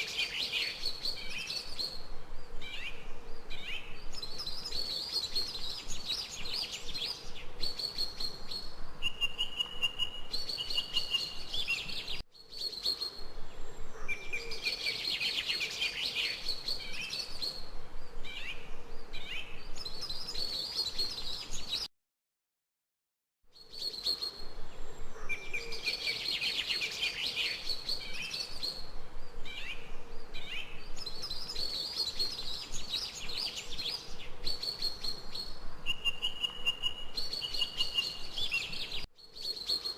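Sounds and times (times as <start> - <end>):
songbirds chirping and trilling: 0.0 - 21.9, 23.5 - 39.9.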